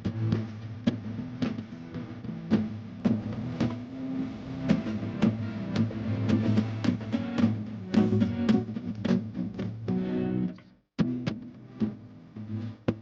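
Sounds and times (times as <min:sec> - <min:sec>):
steady beat: 0:00.0 - 0:10.0
plucked guitar music: 0:03.0 - 0:10.6.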